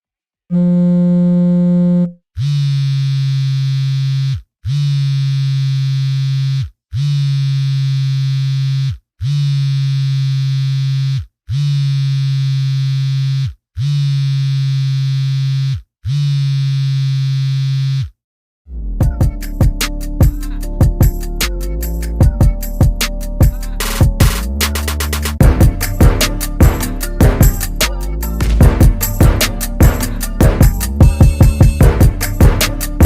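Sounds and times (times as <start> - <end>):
phone vibration buzz: 0.5 - 18.2.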